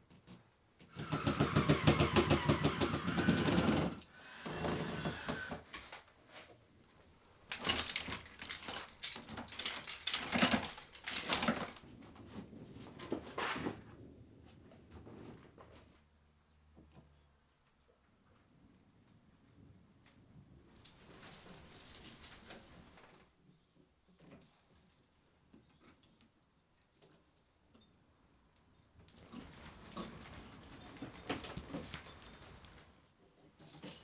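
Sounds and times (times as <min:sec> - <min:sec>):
power tool pulsing motor: 0:01.0 - 0:05.6.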